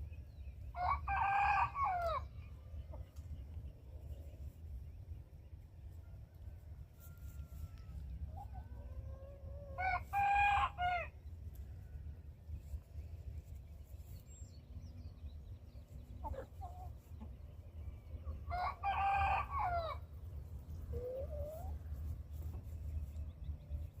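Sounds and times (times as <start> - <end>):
rooster crowing: 18.5 - 20.0.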